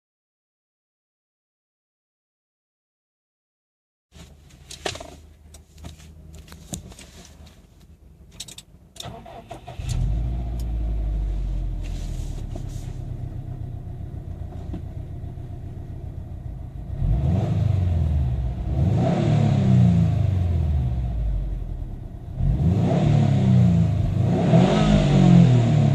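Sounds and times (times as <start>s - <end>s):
car engine starting and idling: 4.2s - 25.9s
engine revving: 9.0s - 13.5s, 16.8s - 25.9s.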